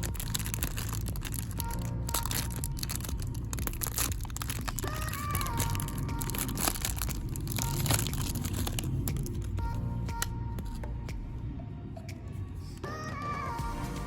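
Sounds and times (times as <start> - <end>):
plastic wrapper crinkling: 0.0 - 10.3.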